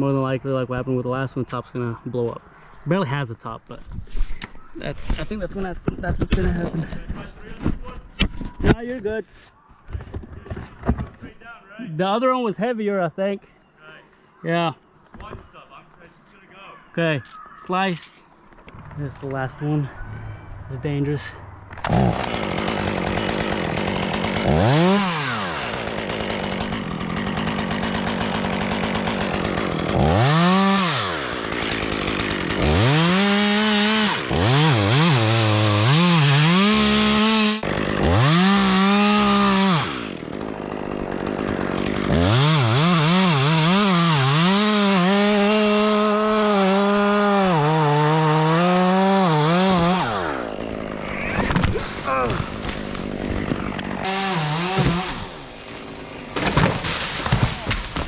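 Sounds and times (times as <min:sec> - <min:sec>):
chainsaw revving and cutting: 0:21.8 - 0:58.0.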